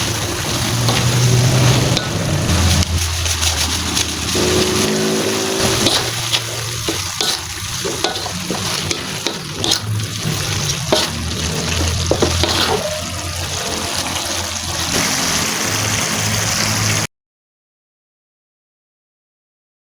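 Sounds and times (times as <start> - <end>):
food sizzling in a pan: 0.0 - 17.1
spatula scraping a pan: 0.5 - 15.1.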